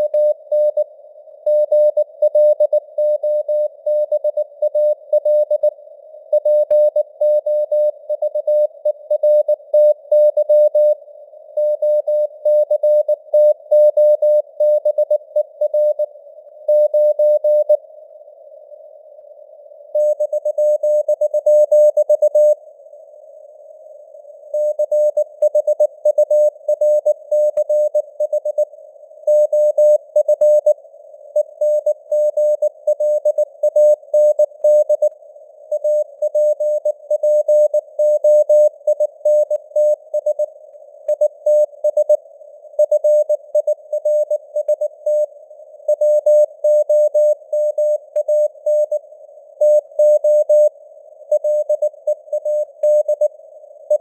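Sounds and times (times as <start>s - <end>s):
faint radio hiss: 17.7s - 54.0s.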